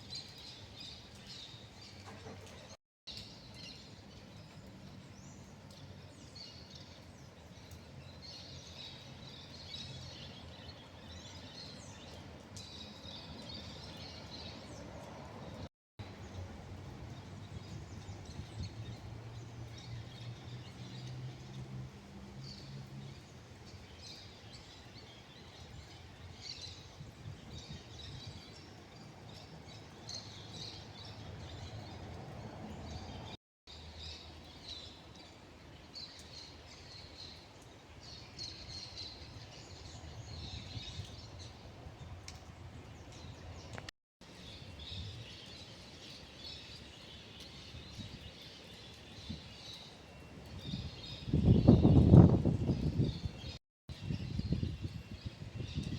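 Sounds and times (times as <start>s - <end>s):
small birds chirping: 22.4s - 55.9s.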